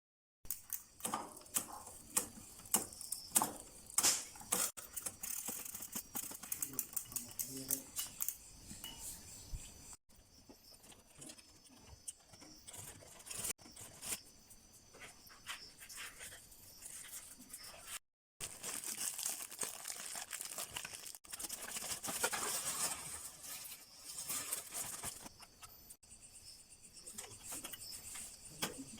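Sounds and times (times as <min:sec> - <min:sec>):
tools clicking rattling and scraping: 0:00.5 - 0:09.3.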